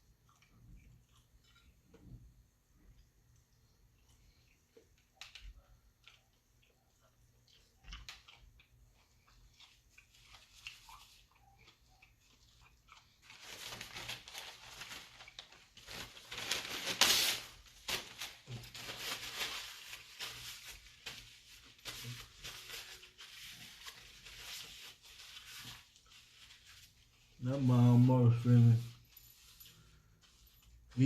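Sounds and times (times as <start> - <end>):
person chewing fried chicken: 0.0 - 2.1, 2.9 - 13.8.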